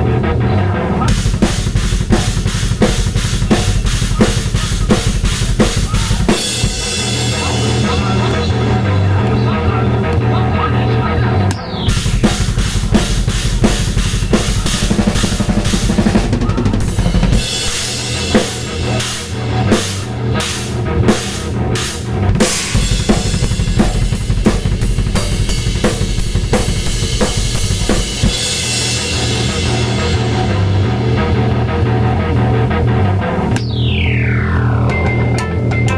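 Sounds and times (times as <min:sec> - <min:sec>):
double bass drum strokes: 0:01.1 - 0:09.4, 0:11.8 - 0:35.4
cymbal crashes: 0:11.8 - 0:31.4.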